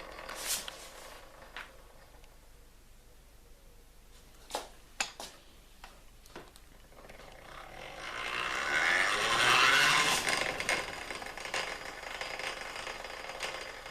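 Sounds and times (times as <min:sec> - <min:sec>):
hand-cranked grinder whirring: 0:00.0 - 0:01.7, 0:06.9 - 0:13.9
grinder clicks and rattles: 0:00.0 - 0:02.2, 0:06.4 - 0:13.9.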